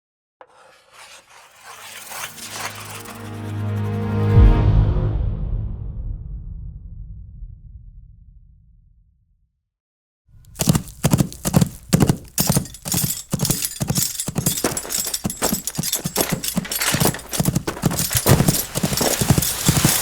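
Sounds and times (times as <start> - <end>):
horse hoofbeats clip-clopping: 10.6 - 20.0.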